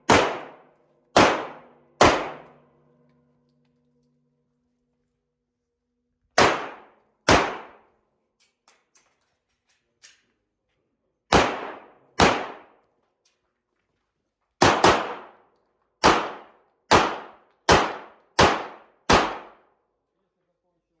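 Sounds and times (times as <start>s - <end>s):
pistol shots: 0.0s - 2.6s, 6.4s - 7.9s, 11.3s - 12.8s, 14.6s - 15.4s, 16.0s - 19.7s.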